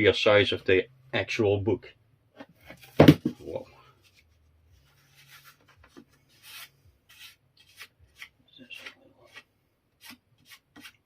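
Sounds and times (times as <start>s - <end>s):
cloth rubbing and scraping: 4.0s - 7.8s.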